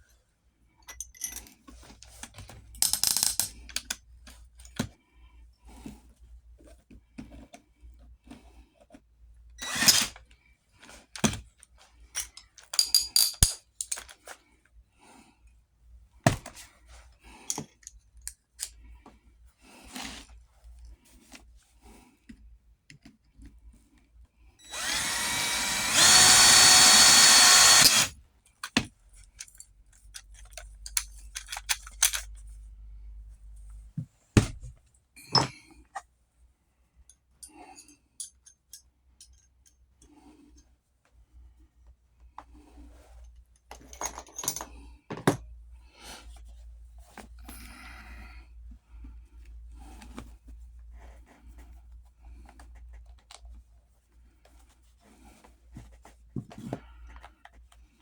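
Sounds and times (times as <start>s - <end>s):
small power drill running: 9.6s - 10.1s, 24.6s - 28.2s.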